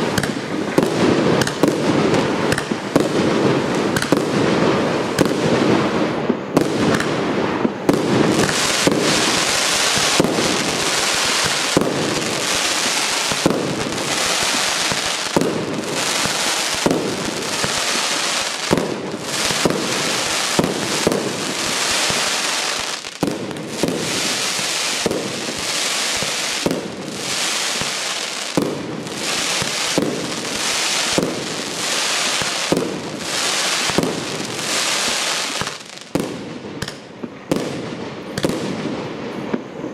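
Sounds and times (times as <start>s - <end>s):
fireworks bangs: 0.0s - 39.9s
fireworks crackling: 0.0s - 39.9s.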